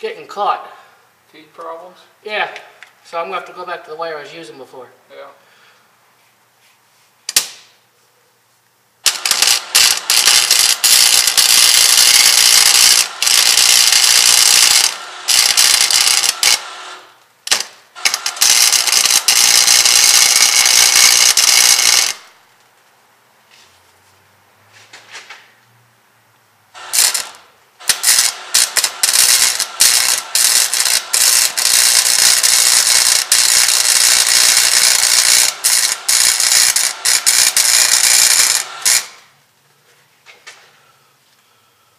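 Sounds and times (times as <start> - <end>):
welder arc crackling: 9.0 - 22.4, 26.8 - 39.3.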